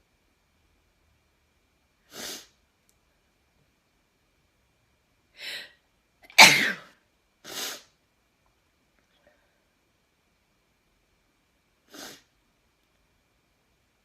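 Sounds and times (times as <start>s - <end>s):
short hissing breaths: 2.1s - 2.6s, 7.4s - 8.0s, 11.9s - 12.3s
person sneezing: 6.3s - 6.9s, 7.5s - 7.9s.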